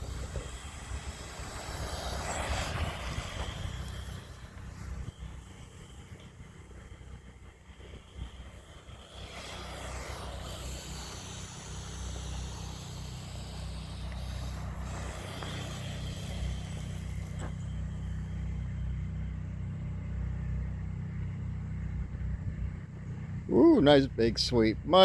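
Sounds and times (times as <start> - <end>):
rc car electric motor whining: 0.0 - 19.2
steady low rumble: 0.0 - 25.0.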